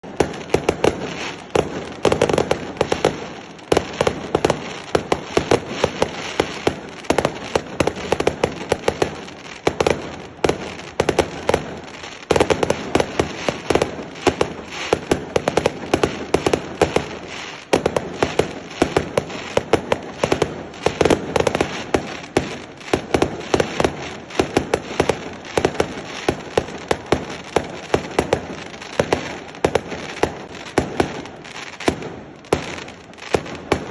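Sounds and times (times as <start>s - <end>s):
firecrackers going off: 0.0s - 33.9s.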